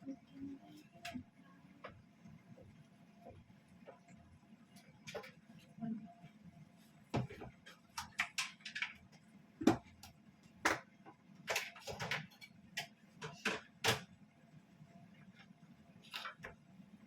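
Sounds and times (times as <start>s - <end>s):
low steady hum: 0.0s - 11.7s
sharp clicks and light knocks: 7.2s - 14.2s.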